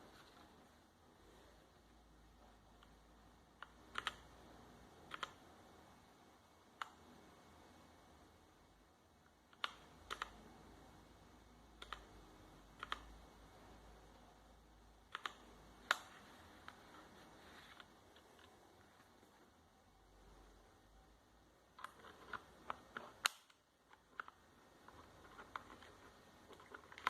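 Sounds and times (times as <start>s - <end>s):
mechanical keyboard clicks: 3.6s - 4.3s, 5.0s - 5.4s, 9.5s - 10.4s, 11.8s - 12.1s, 12.8s - 13.1s, 15.1s - 16.1s.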